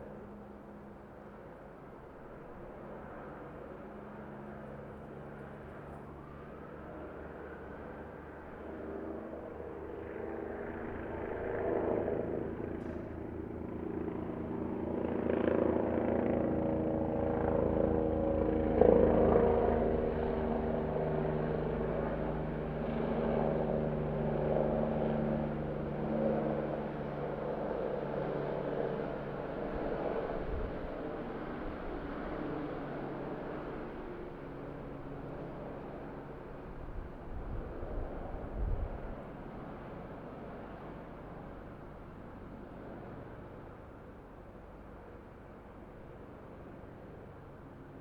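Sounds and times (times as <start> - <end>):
helicopter rotor beating: 11.0 - 36.5.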